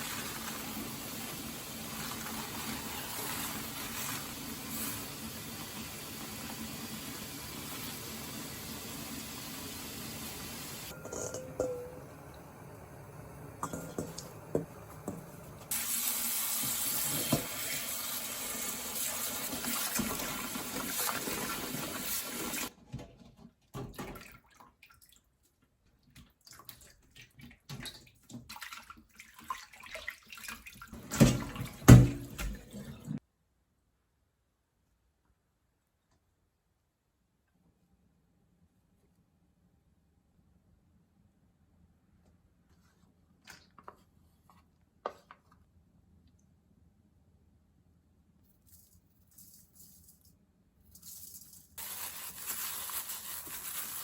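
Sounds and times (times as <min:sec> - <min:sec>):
kitchen clicks and knocks: 0:10.9 - 0:12.1, 0:13.6 - 0:15.4, 0:31.0 - 0:32.7
tap water running into sink: 0:13.6 - 0:22.7, 0:27.4 - 0:33.2.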